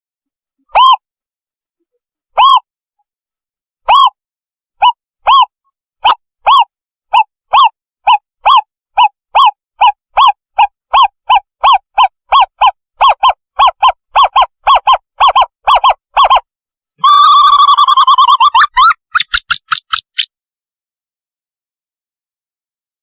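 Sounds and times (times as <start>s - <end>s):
quavering owlet trill: 0.7s - 1.0s, 2.4s - 2.7s, 3.9s - 4.2s, 4.8s - 16.4s
recorded owlet hooting notes: 0.7s - 1.0s, 2.4s - 2.7s, 3.9s - 4.2s, 4.8s - 16.4s.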